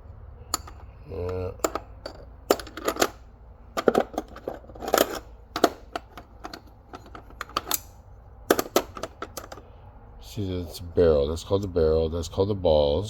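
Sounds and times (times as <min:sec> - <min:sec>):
metal hinges clinking: 0:00.5 - 0:09.6.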